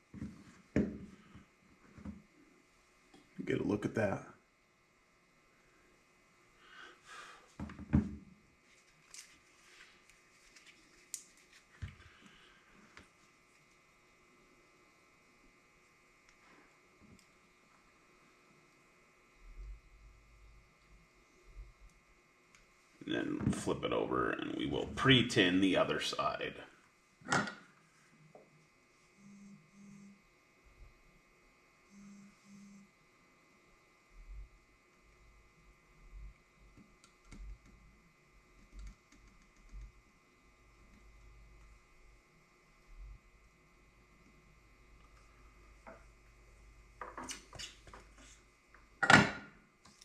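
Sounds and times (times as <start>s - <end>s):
faint short buzzy sounds: 28.9s - 30.8s, 31.5s - 33.2s.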